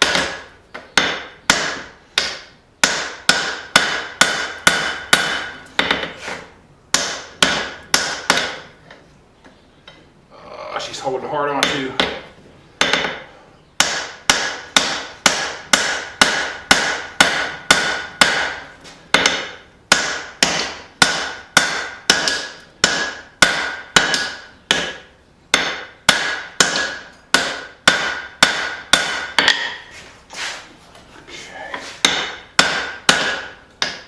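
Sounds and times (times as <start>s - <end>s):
hammer striking hot steel on anvil: 0.0s - 6.1s, 6.9s - 8.6s, 13.8s - 29.9s, 32.0s - 34.0s.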